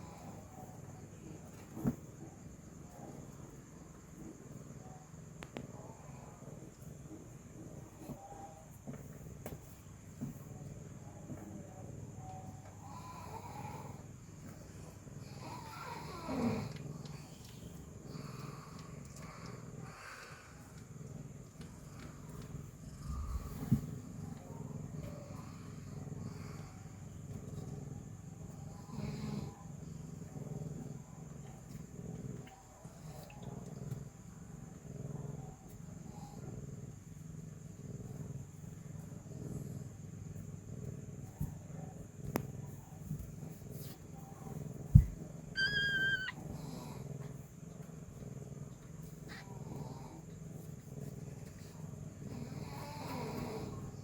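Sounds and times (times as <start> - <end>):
cat purring: 0.0 - 54.0.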